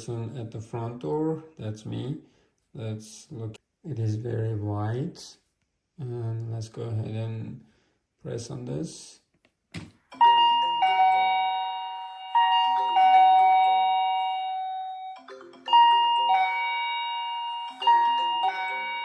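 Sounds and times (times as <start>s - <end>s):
doorbell button click: 10.1s - 19.0s
doorbell chime melody: 10.1s - 19.0s.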